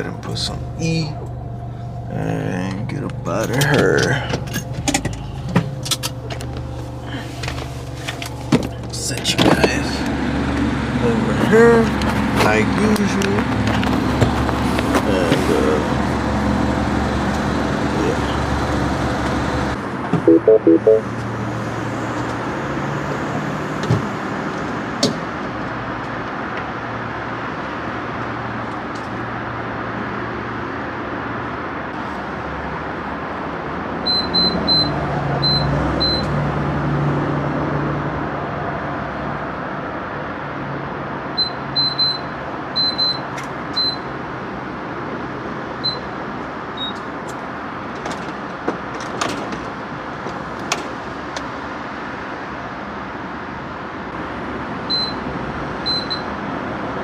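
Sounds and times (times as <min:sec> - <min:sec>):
traffic noise: 0:00.0 - 0:57.0
short high keypad beeps: 0:20.3 - 0:21.0.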